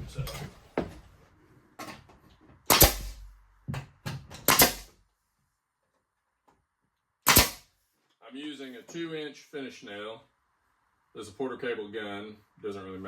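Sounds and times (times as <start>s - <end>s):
nail gun firing: 2.7s - 3.3s, 4.4s - 5.0s, 7.2s - 7.6s.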